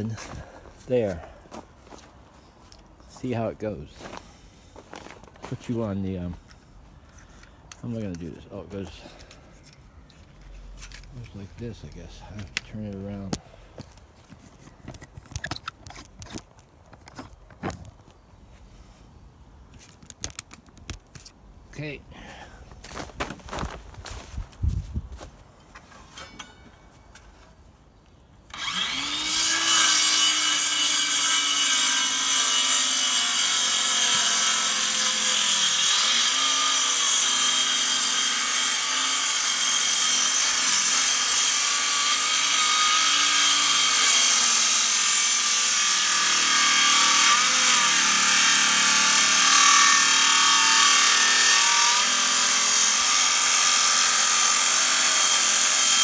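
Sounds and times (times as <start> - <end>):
circular saw cutting wood: 28.5 - 56.0.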